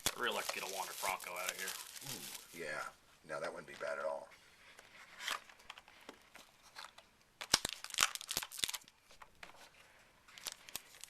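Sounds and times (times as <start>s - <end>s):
plastic wrap crackling: 0.0s - 2.8s, 7.4s - 9.0s.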